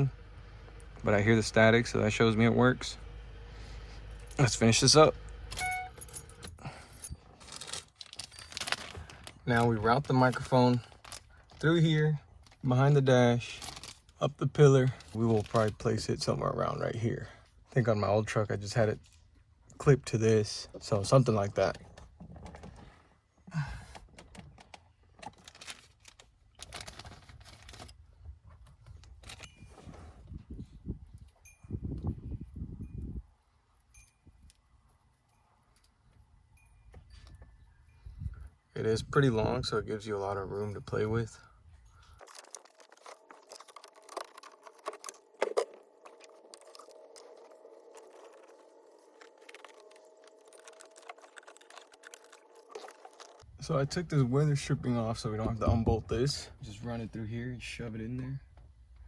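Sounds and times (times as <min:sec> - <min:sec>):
cable rustling: 0:06.2 - 0:12.7, 0:41.9 - 0:53.5
faint steady hum: 0:40.7 - 0:59.0.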